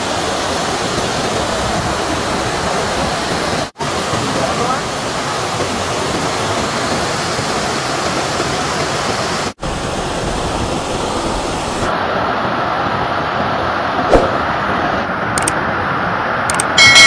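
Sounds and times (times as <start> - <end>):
loud rushing noise: 14.0 - 15.1.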